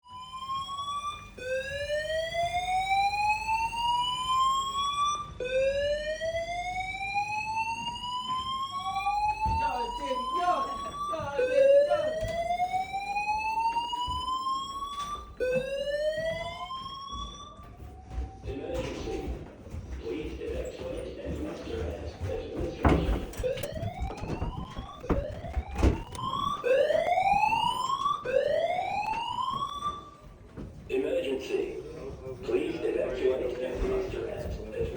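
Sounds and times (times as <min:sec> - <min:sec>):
fire alarm rising whoop: 0:00.0 - 0:18.6, 0:23.3 - 0:30.3.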